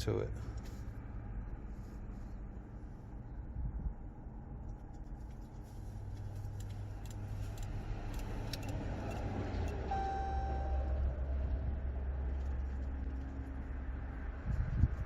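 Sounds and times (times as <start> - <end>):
low steady hum: 0.0 - 15.0
electronic beep: 9.9 - 11.0.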